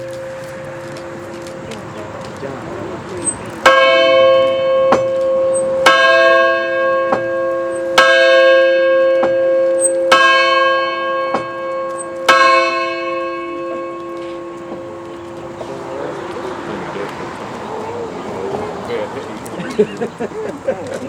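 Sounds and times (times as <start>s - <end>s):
large bell tolling: 2.8s - 18.0s.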